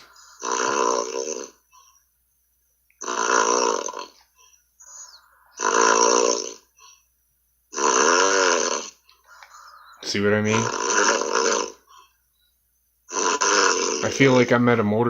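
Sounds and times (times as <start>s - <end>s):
man snoring heavily: 0.0s - 1.6s, 3.0s - 4.2s, 4.9s - 6.7s, 7.7s - 9.0s, 9.6s - 11.9s, 13.1s - 14.4s.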